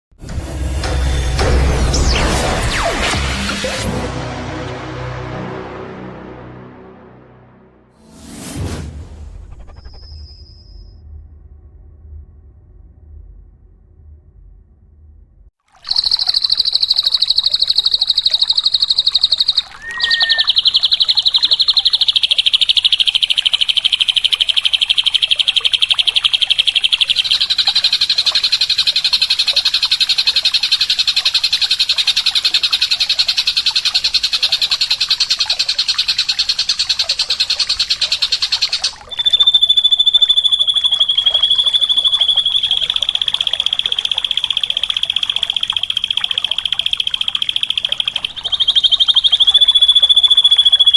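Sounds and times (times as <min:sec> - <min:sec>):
bird buzzy trill: 0:15.8 - 0:50.9
short whistled note: 0:19.2 - 0:20.6.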